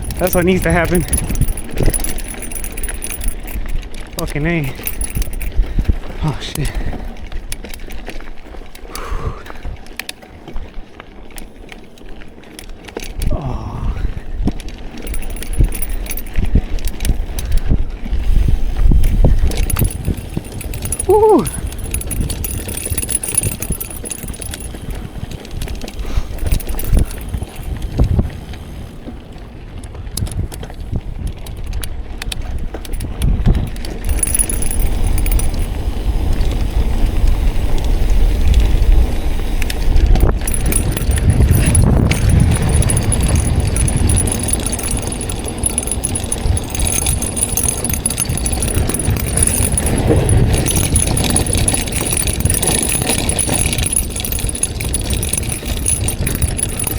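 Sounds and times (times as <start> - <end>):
bike chain slapping and jangling: 0.0 - 7.0, 15.0 - 16.6, 19.0 - 28.0, 32.4 - 36.4, 40.0 - 56.9
mountain bike rattling on rough trail: 0.0 - 8.8, 14.6 - 17.7, 18.3 - 28.8, 30.3 - 56.9.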